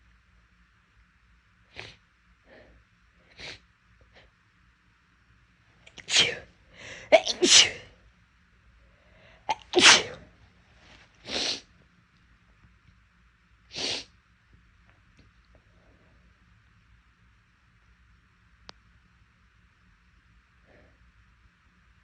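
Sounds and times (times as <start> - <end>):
person sneezing hard: 6.0 - 7.9, 9.4 - 10.2, 11.2 - 11.6.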